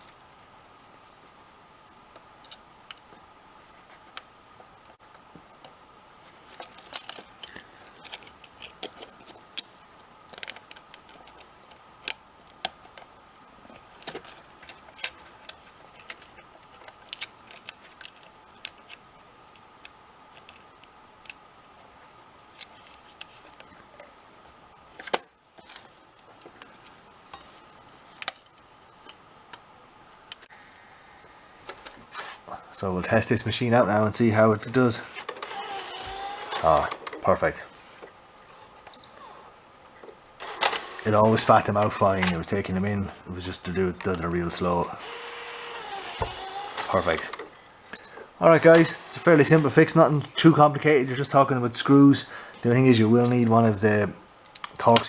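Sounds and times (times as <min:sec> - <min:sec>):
plastic parts clicking: 0:06.5 - 0:09.7, 0:10.3 - 0:13.1, 0:14.0 - 0:19.0.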